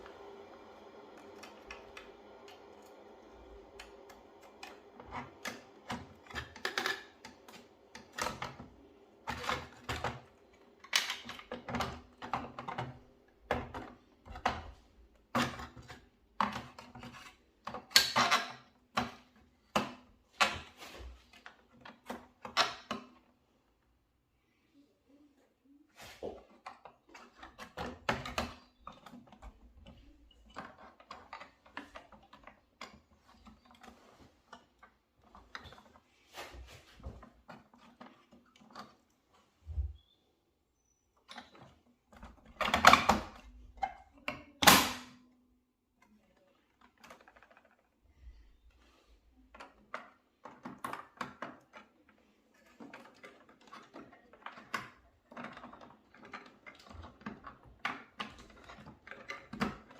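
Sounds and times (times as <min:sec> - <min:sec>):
tools clicking and knocking: 0:04.0 - 0:20.7, 0:49.6 - 0:59.9.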